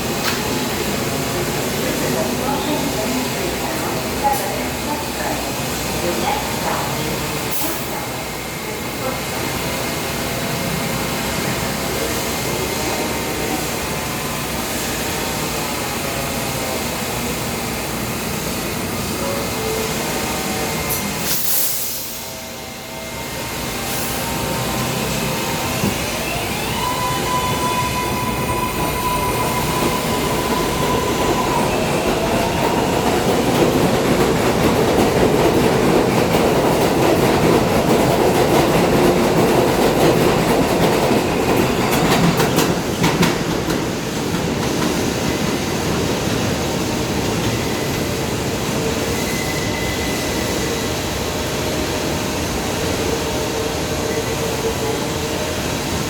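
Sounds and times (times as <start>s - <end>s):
train wheels rumbling and squealing: 0.0s - 56.0s
train motor whine: 21.9s - 33.7s.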